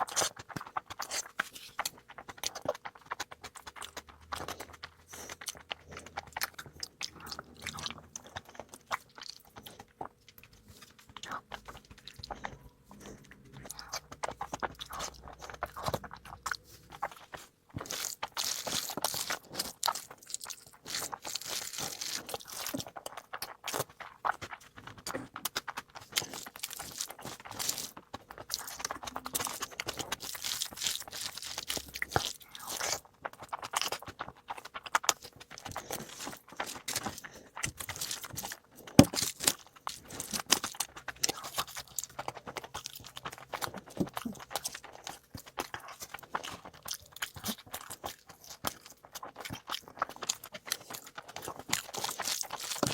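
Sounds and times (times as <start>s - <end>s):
person chewing crunchy food: 0.0s - 52.9s.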